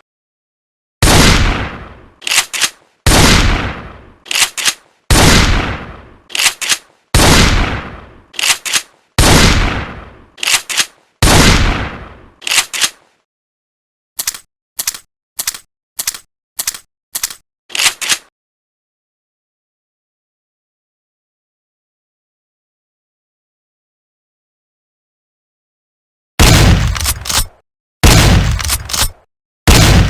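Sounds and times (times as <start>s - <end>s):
shotgun shots: 1.0s - 6.6s, 7.2s - 8.6s, 9.2s - 12.2s, 26.4s - 29.1s, 29.7s - 30.0s
shotgun slide click-clack: 2.2s - 2.8s, 4.3s - 4.9s, 6.3s - 6.9s, 8.4s - 9.0s, 10.4s - 11.0s, 12.4s - 13.0s, 14.2s - 18.3s, 26.9s - 27.6s, 28.5s - 29.2s
shells being loaded clicks: 26.9s - 27.6s, 28.6s - 29.2s.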